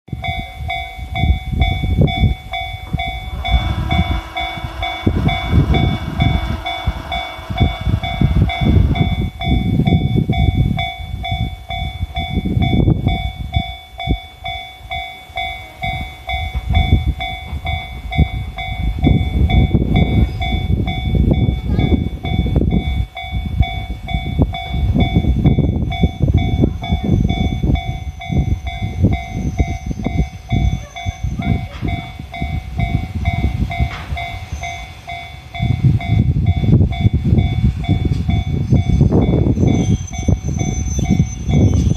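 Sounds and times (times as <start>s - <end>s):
level crossing alarm ringing: 0.1s - 41.9s
low rumble: 0.1s - 41.9s
horn sounding: 3.2s - 8.9s.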